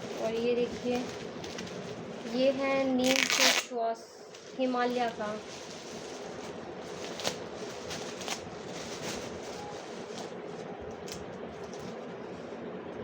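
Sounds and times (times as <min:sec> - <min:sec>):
plastic pack clicks and rustles: 0:00.0 - 0:02.4, 0:03.0 - 0:03.7, 0:04.4 - 0:10.3
steady background hiss: 0:00.0 - 0:13.0.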